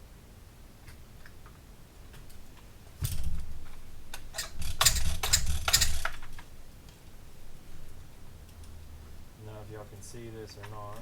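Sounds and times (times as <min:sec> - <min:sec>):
recoil starter pulled: 0:04.2 - 0:06.4.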